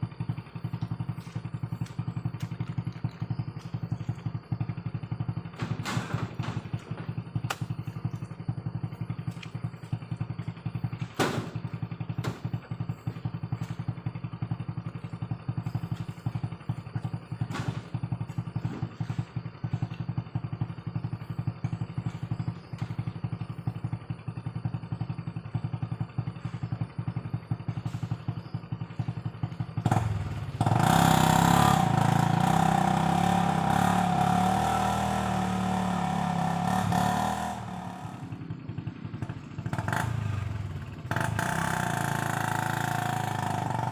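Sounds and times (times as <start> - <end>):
motorcycle engine running: 0.0 - 43.9
sharp engine knocks: 5.3 - 8.6, 9.2 - 14.0, 15.6 - 20.3.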